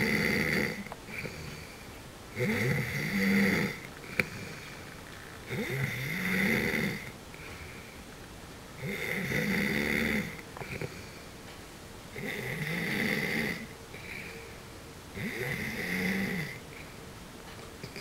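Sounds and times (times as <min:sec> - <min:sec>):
person snoring: 0:00.0 - 0:04.8, 0:05.4 - 0:08.0, 0:08.8 - 0:11.3, 0:12.1 - 0:14.4, 0:15.2 - 0:16.9.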